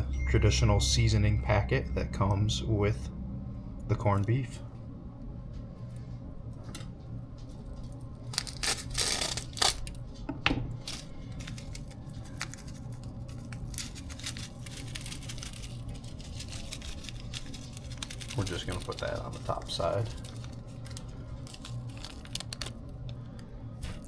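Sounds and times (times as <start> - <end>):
packet tearing open: 8.2 - 10.0, 10.8 - 23.2.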